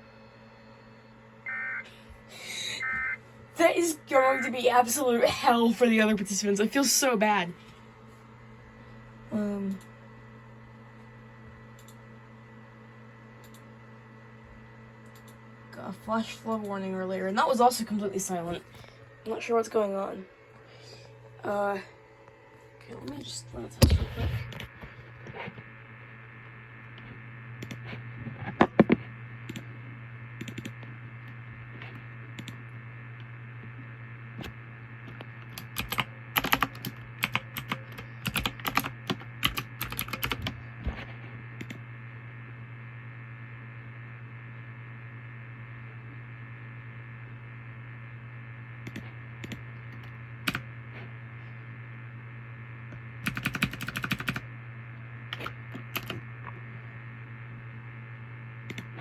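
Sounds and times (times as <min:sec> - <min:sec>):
low hum: 0:00.0 - 0:53.4, 0:54.4 - 0:59.0
typing on computer keyboard: 0:30.4 - 0:30.7, 0:35.5 - 0:40.6, 0:48.9 - 0:50.6, 0:53.2 - 0:54.4, 0:55.4 - 0:56.2.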